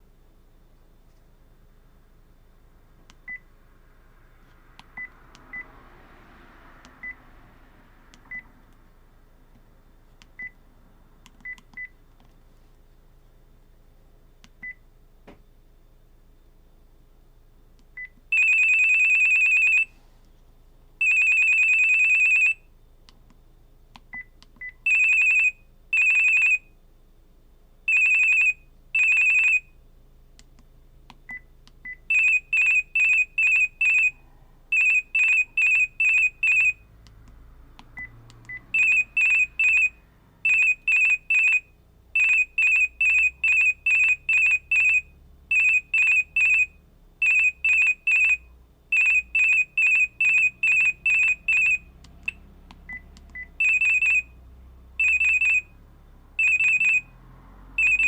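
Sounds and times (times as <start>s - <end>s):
phone ringtone beeping: 18.3s - 20.0s, 21.0s - 22.6s, 24.8s - 26.7s, 27.9s - 29.7s, 32.1s - 36.8s, 38.0s - 54.4s, 55.0s - 55.8s, 56.4s - 57.2s, 57.8s - 58.0s.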